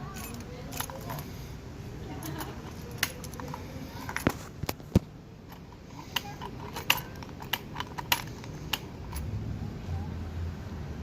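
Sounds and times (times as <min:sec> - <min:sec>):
keys jingling: 0:00.0 - 0:01.4, 0:02.0 - 0:04.3, 0:05.4 - 0:09.3.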